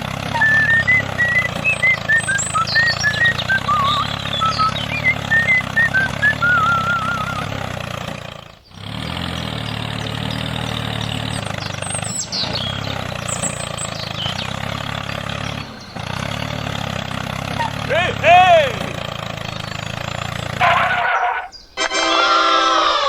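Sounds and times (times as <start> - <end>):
engine running steadily: 0.0 - 21.8
warbling high whistles: 0.3 - 7.5, 20.6 - 23.0.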